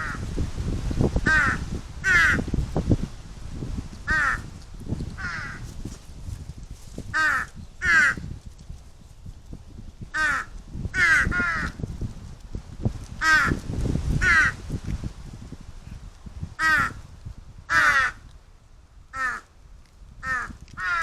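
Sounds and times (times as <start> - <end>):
wind noise on microphone: 0.0 - 21.0
crows cawing: 1.3 - 2.4, 4.1 - 4.5, 5.2 - 5.6, 7.2 - 8.2, 10.1 - 11.8, 13.2 - 13.6, 14.2 - 14.6, 16.6 - 17.0, 17.7 - 18.2, 19.1 - 19.5, 20.2 - 21.0.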